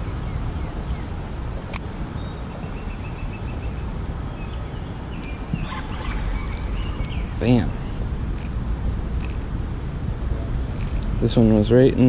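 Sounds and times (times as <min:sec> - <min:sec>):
river water: 0:00.0 - 0:11.2
wind: 0:00.0 - 0:12.0
bird chirping: 0:02.1 - 0:08.6.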